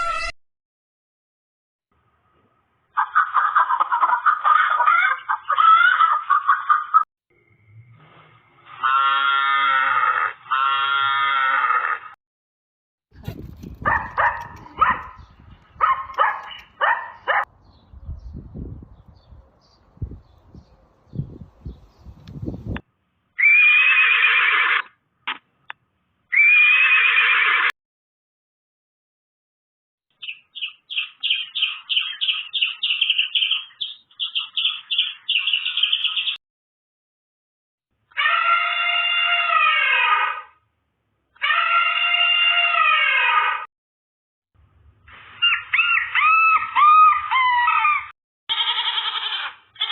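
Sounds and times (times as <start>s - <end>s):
animal drawn-out cries: 3.0s - 6.7s, 8.6s - 12.2s, 23.4s - 25.0s, 26.3s - 27.7s, 38.1s - 40.6s, 41.4s - 43.7s, 45.4s - 49.9s
bird chirping: 14.0s - 22.8s, 30.1s - 36.4s
short sharp animal calls: 41.4s - 43.7s.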